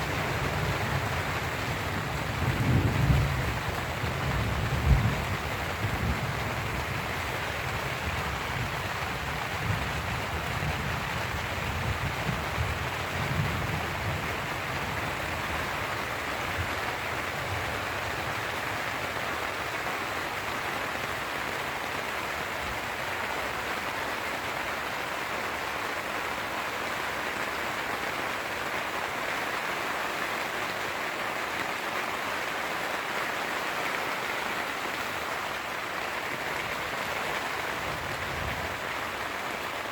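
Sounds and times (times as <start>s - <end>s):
low thunder rumble: 0.0s - 6.8s
heavy rain on a tent: 0.0s - 39.9s.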